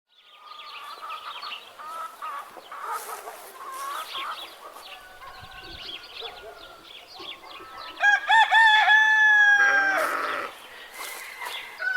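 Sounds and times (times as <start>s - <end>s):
chickens clucking: 0.5s - 8.1s.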